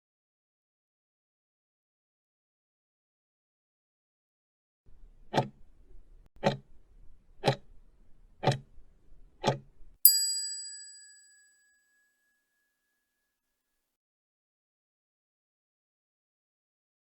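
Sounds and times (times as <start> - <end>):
bright bell ding: 10.1 - 12.4.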